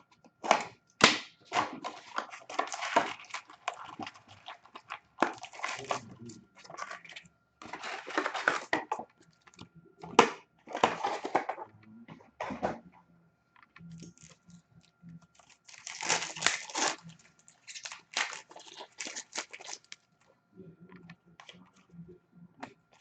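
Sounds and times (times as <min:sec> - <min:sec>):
foil wrappers crinkling and tearing: 0:01.8 - 0:08.7, 0:15.3 - 0:20.1
cardboard rustling: 0:05.2 - 0:08.8, 0:10.7 - 0:11.6, 0:15.3 - 0:20.0.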